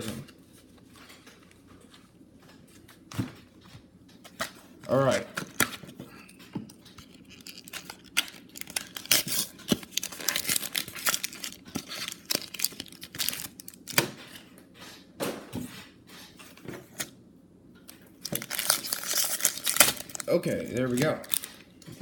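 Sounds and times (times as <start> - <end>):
foil wrapper tearing and crinkling: 4.9 - 6.0, 6.7 - 14.2, 18.2 - 22.0.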